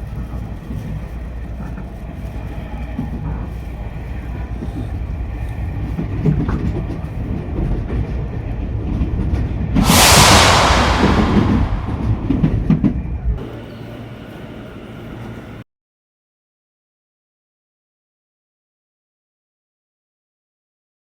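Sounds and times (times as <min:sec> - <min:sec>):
electric train rumbling on rails: 0:05.9 - 0:15.6
loud hiss: 0:09.8 - 0:12.8.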